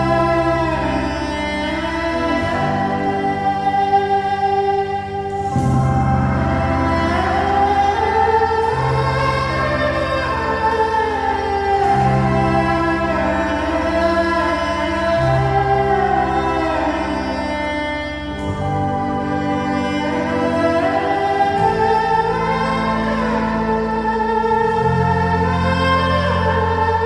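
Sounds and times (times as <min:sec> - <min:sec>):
slow ambient music: 0:00.0 - 0:27.0.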